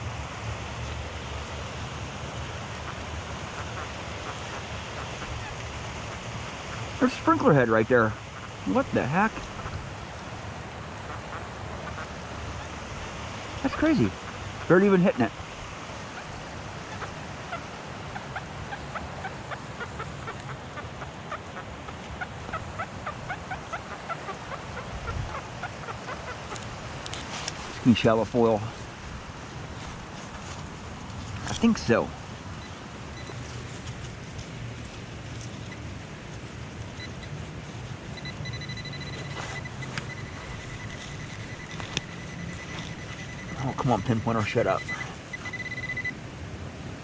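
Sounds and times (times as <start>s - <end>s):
rain hiss: 0.0s - 47.0s
metal detector chirping tones: 32.6s - 33.4s, 36.9s - 46.2s.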